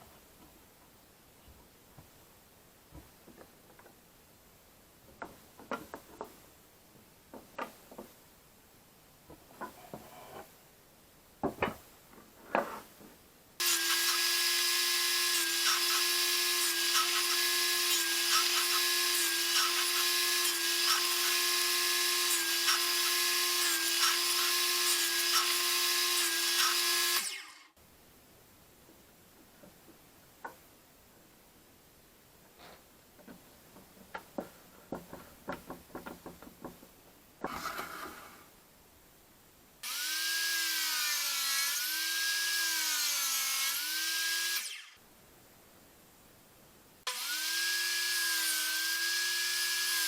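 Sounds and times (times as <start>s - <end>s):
wood knocks and clicks: 5.1s - 6.4s, 7.3s - 8.2s, 11.4s - 12.9s, 29.4s - 30.6s, 33.2s - 37.6s
electric power tool whining: 47.1s - 50.0s.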